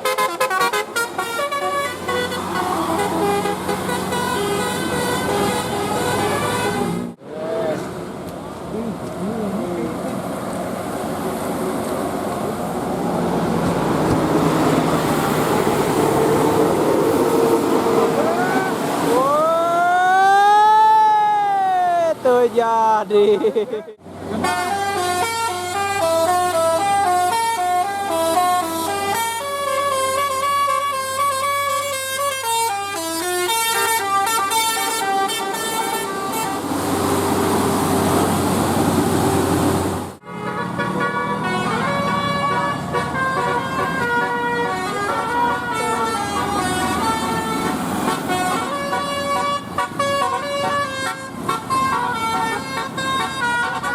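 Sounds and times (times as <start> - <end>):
bus musical air horn: 0.0 - 7.2, 24.3 - 37.9, 40.1 - 53.9
large vehicle engine and road noise: 0.0 - 53.9
loud rushing noise: 10.2 - 19.3.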